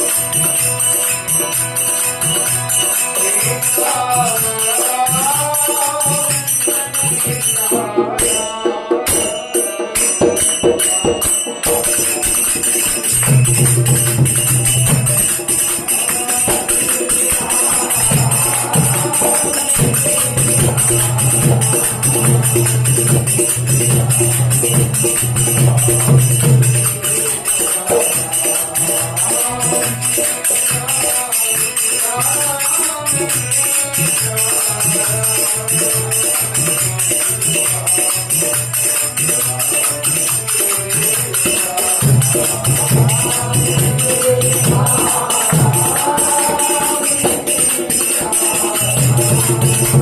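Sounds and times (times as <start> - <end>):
tambourine jingle: 0.0 - 50.0
pulsing drum beat: 10.2 - 31.3, 31.9 - 50.0.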